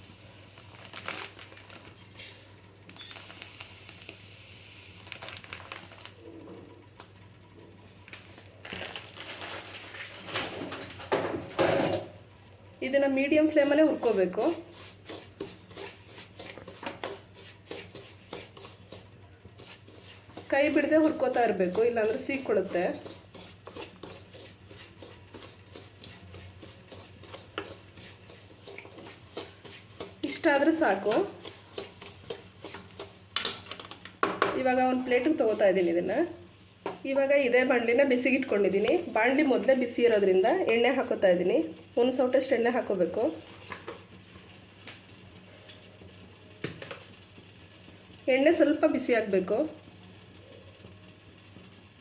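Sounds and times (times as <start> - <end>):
spatula scraping semolina in pan: 13.4 - 33.4, 35.0 - 36.4.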